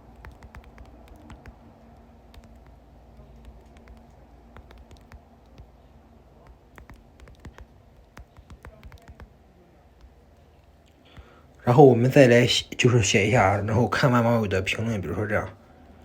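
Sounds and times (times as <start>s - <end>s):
faint keyboard clicks: 0.0s - 9.3s, 10.0s - 11.5s.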